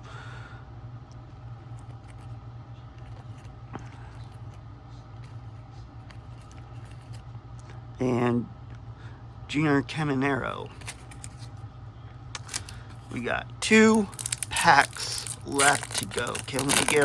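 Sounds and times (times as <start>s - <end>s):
steady low hum: 0.0s - 17.0s
cards rustling: 10.7s - 11.6s, 12.4s - 17.0s.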